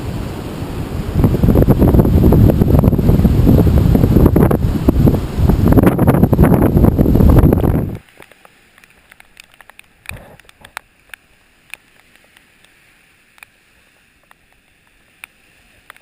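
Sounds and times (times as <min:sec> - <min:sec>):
wind buffeting microphone: 0:00.0 - 0:08.0
faint clicks: 0:07.6 - 0:16.0.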